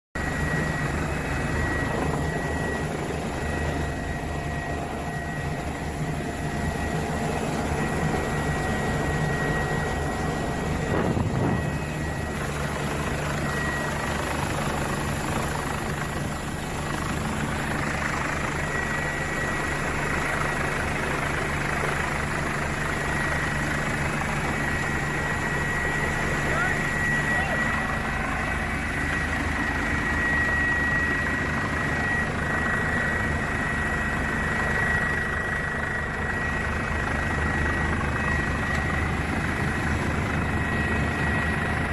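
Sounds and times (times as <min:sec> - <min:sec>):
helicopter turbine whine: 0:00.2 - 0:41.9.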